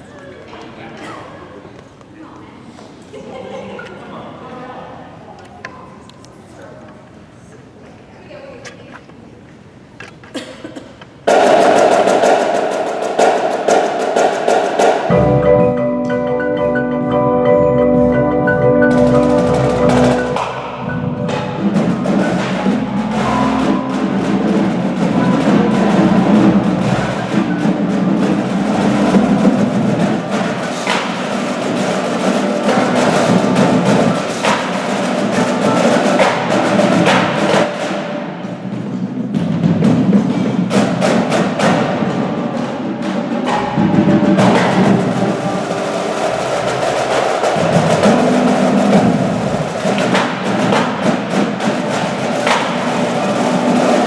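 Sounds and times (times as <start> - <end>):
percussion ensemble playing: 11.2 - 54.0.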